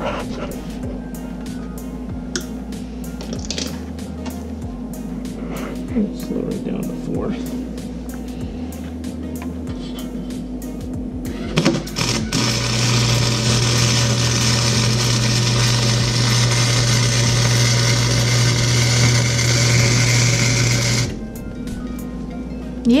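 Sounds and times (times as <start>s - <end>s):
welder arc hissing and humming: 9.9s - 21.2s.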